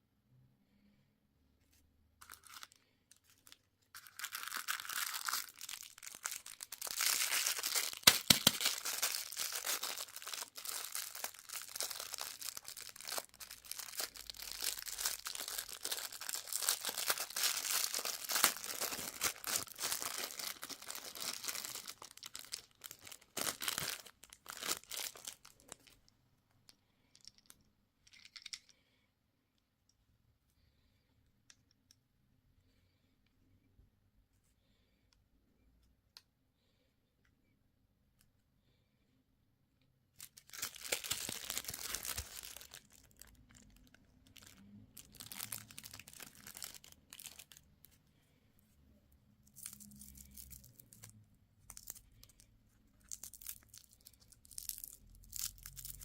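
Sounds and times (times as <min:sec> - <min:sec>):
packaging crinkling and tearing: 0:02.2 - 0:26.0, 0:40.2 - 0:47.7, 0:53.0 - 0:56.0
packaging snapping: 0:04.0 - 0:25.8, 0:40.4 - 0:43.2.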